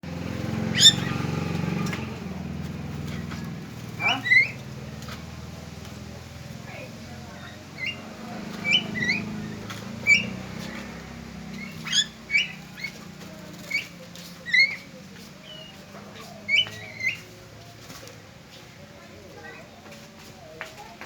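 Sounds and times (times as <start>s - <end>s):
bird chirping calls: 0.1s - 5.2s, 6.2s - 17.7s.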